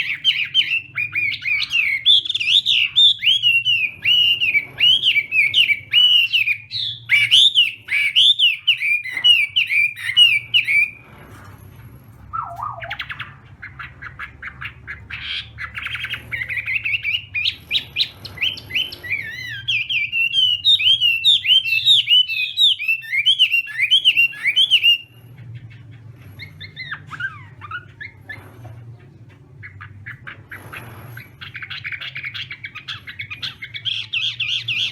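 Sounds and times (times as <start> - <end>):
bird singing whistled phrases: 0.0 - 11.0, 12.3 - 13.3, 15.7 - 25.1
steady low hum: 0.0 - 22.3, 24.2 - 34.9
soft bird calls: 0.0 - 34.9.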